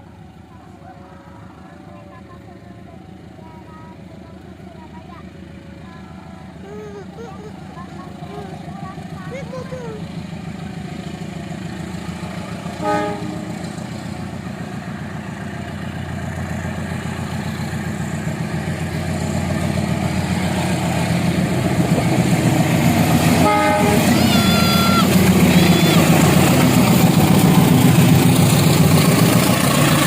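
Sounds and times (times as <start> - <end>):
low train drone: 0.0 - 30.0
train horn: 12.8 - 13.7, 23.4 - 26.4.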